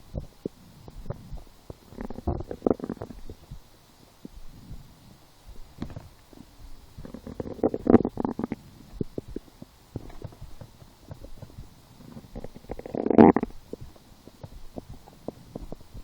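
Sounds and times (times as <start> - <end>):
stomach growling and gurgling: 0.1 - 4.9, 5.5 - 16.0.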